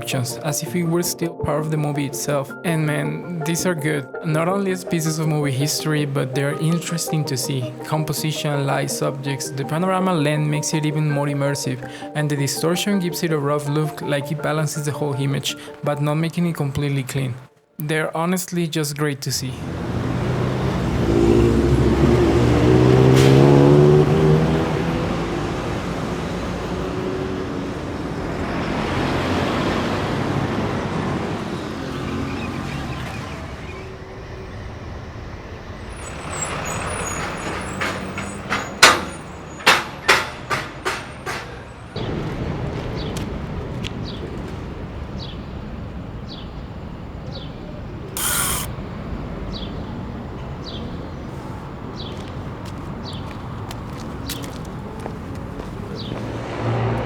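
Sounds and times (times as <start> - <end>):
traffic noise: 0.0 - 18.0, 18.6 - 57.0
heavy vehicle engine pulling away: 19.6 - 40.0, 54.2 - 57.0
sharp clicks: 48.2 - 48.7
short hiss: 48.2 - 48.7.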